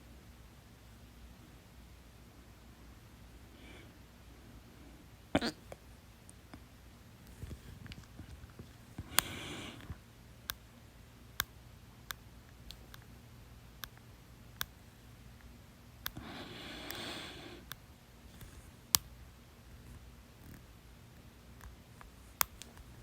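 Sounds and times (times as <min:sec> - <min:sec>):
person breathing: 0:03.5 - 0:05.1, 0:09.0 - 0:10.0, 0:16.1 - 0:17.8
person hiccuping: 0:05.4 - 0:05.8.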